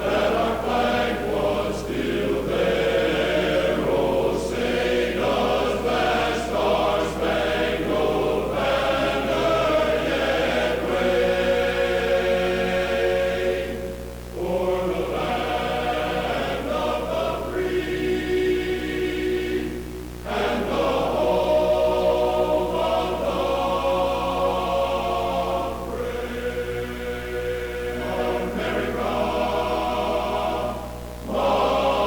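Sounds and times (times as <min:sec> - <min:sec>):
choir singing sustained chords: 0:00.0 - 0:32.0
steady low hum: 0:00.0 - 0:32.0.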